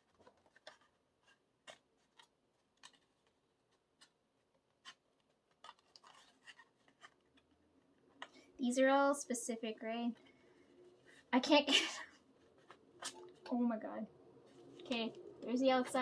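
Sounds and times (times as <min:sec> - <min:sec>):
paper scraping: 0:00.0 - 0:07.5
handling cardboard folder: 0:00.0 - 0:08.4, 0:12.2 - 0:13.6.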